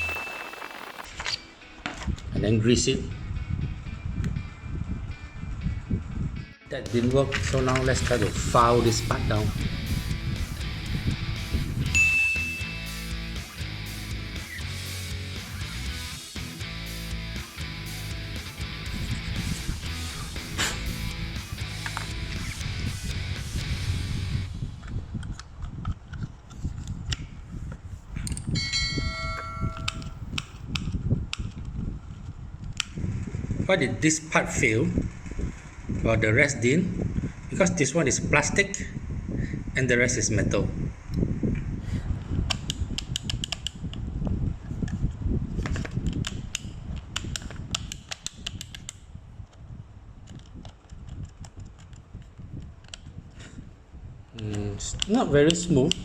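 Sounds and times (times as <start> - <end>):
metal object ringing: 0.0 - 1.1, 11.9 - 13.1, 28.2 - 30.4
hand tools clicking on plastic part: 45.8 - 49.0, 50.2 - 53.1.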